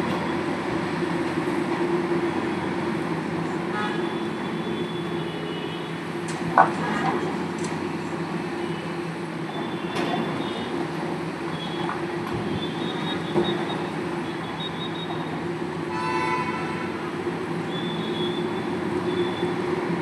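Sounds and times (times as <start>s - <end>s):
horn-like tone: 3.7s - 5.9s, 15.9s - 17.0s.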